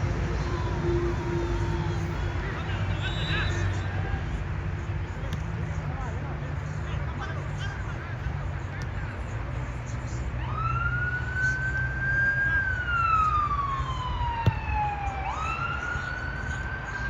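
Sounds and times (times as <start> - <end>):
siren wailing: 10.4 - 17.0.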